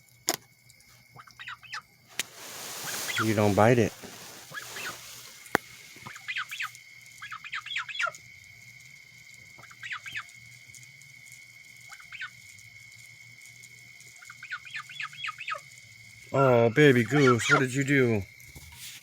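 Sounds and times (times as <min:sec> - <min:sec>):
goose squawking: 0:17.0 - 0:17.7.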